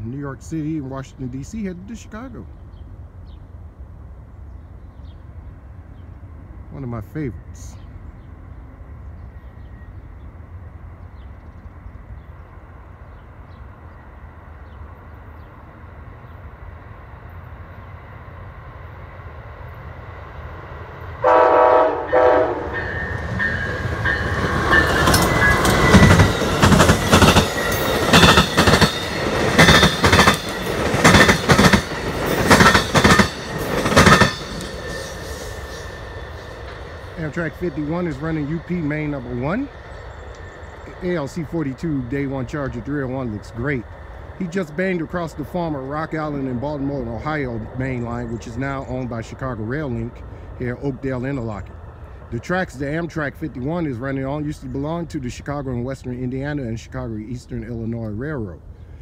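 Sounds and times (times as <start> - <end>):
diesel locomotive rumbling: 0.0 - 59.0
train horn blast: 21.2 - 24.3
train wheels banging over crossing: 22.1 - 39.6.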